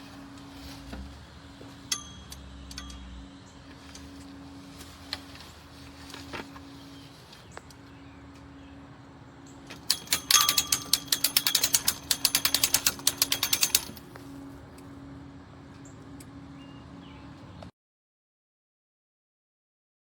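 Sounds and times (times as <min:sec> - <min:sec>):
umbrella crank ratcheting: 0:09.7 - 0:14.1.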